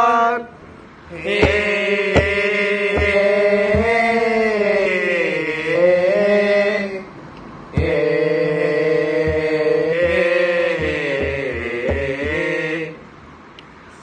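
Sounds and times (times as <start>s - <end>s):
male chorus chanting: 0.0s - 0.5s, 1.1s - 13.1s
low knocks keeping time: 1.2s - 4.6s, 7.7s - 12.8s.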